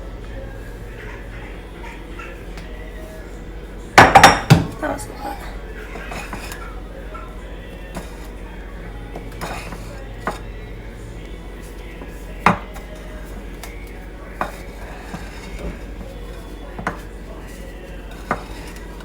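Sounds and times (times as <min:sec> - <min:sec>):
utensil clinking against mixing bowl: 0:00.1 - 0:19.0.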